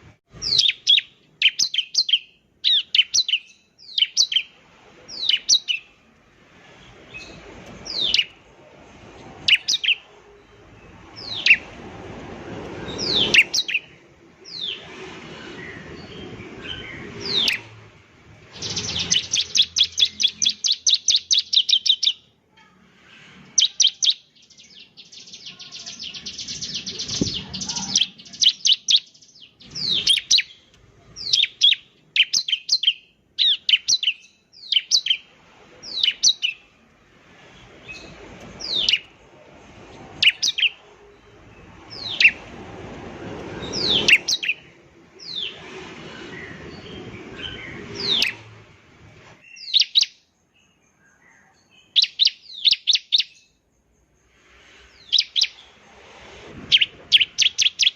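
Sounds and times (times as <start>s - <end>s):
bird rattling trills: 6.8s - 11.8s, 12.8s - 17.9s, 37.5s - 42.6s, 43.6s - 48.6s, 56.6s - 57.9s.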